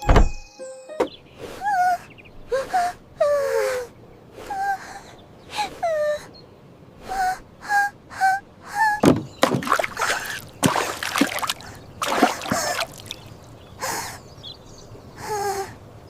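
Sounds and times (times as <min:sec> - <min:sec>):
cartoon water splashing: 0:09.0 - 0:13.3.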